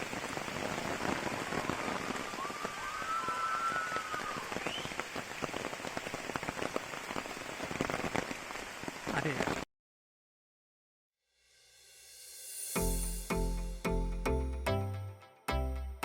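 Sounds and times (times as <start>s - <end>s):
rain pattering: 0.0s - 9.7s
high whistle-like call: 2.3s - 5.0s
short rising note: 11.3s - 15.1s.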